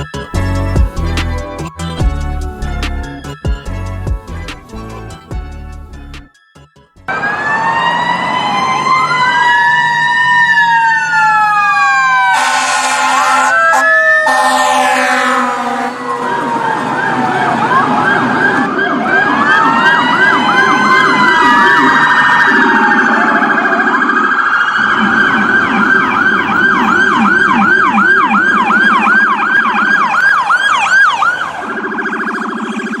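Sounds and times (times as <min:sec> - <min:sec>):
emergency vehicle sirens: 0:00.0 - 0:33.0
low rapid warbling tone: 0:19.5 - 0:30.0.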